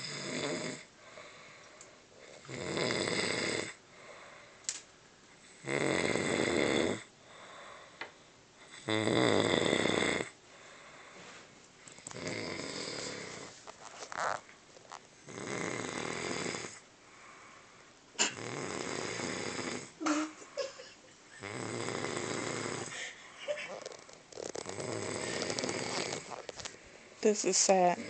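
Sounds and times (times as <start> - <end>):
woman snoring loudly: 0.0 - 0.9, 2.5 - 3.8, 5.6 - 7.1, 8.8 - 10.4, 12.1 - 13.5, 15.3 - 16.8, 18.2 - 20.4, 21.4 - 26.5
quiet breathing: 0.8 - 2.5, 3.6 - 5.6, 7.0 - 8.9, 10.3 - 13.7, 15.6 - 18.1, 18.8 - 28.0.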